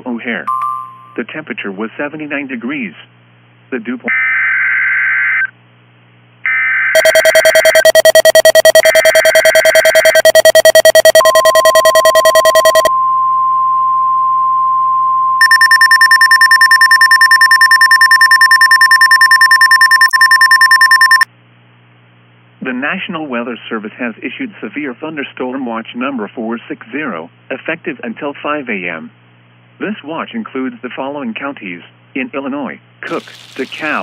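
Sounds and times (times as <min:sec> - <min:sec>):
high beeping alarm: 0:00.5 - 0:01.2, 0:07.0 - 0:13.2, 0:15.4 - 0:21.3
harsh buzzing alarm: 0:06.5 - 0:12.9, 0:15.4 - 0:21.3, 0:33.1 - 0:34.0
steady warning alarm tone: 0:07.0 - 0:12.9, 0:15.4 - 0:21.3
warbling alert bursts: 0:07.0 - 0:12.9, 0:15.4 - 0:21.3, 0:33.1 - 0:34.0.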